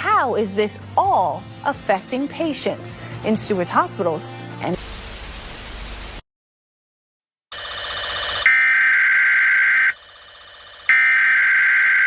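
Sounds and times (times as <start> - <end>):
rising burst of static hiss: 4.8 - 6.2
screeching digital data bursts: 7.6 - 12.0.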